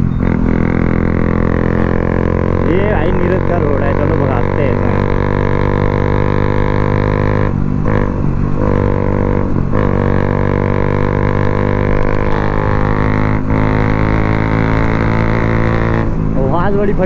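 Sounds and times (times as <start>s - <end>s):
motorcycle engine under throttle: 0.0s - 17.0s.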